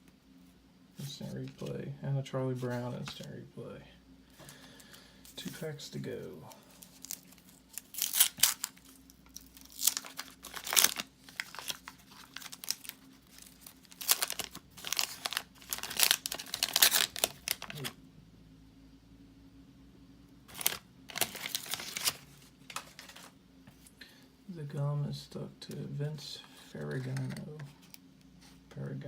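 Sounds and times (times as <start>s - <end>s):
wax paper crinkling: 4.4s - 18.0s, 20.5s - 23.9s.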